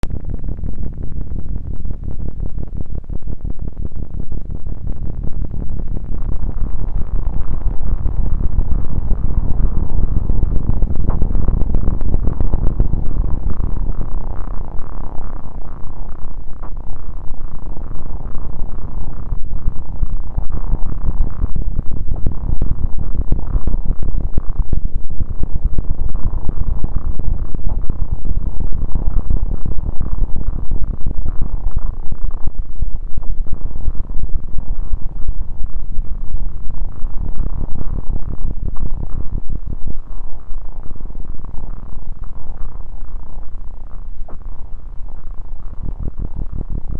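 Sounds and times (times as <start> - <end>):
deep low synth drone: 0.0 - 46.9.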